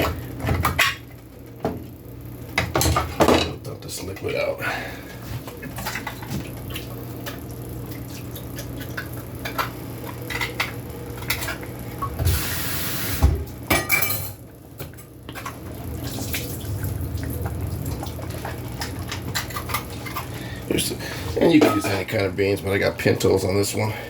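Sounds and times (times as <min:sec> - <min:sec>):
can and dishes clinking: 0:21.5 - 0:22.1.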